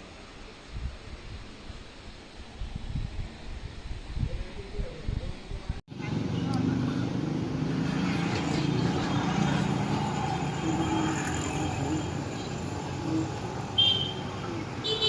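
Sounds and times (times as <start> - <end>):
street traffic: 5.9 - 15.0
vehicle horn toot: 13.8 - 15.0.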